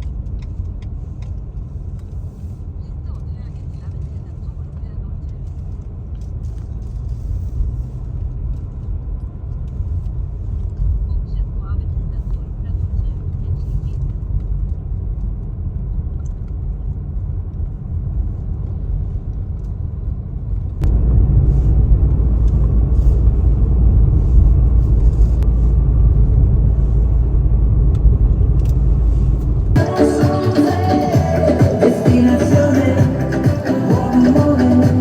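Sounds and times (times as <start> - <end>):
car road and engine rumble: 0.0 - 35.0
music: 29.8 - 35.0.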